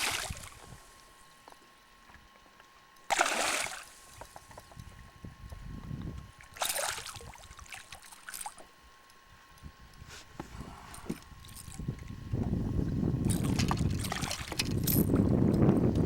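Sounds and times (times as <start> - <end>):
fish splashing in water: 0.0 - 0.6, 3.1 - 4.4, 6.4 - 8.6.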